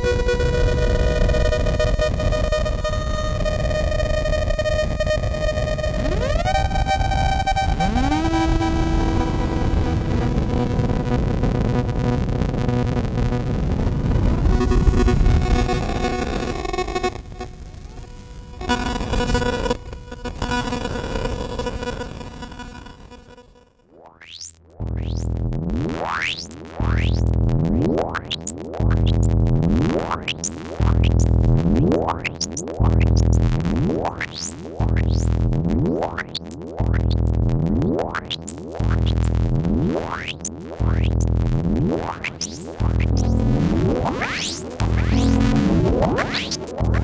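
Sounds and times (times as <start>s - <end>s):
synthesizer rising pitch sweeps: 5.9s - 11.1s, 23.9s - 25.4s, 26.0s - 47.0s
low bass pulse: 24.8s - 47.0s.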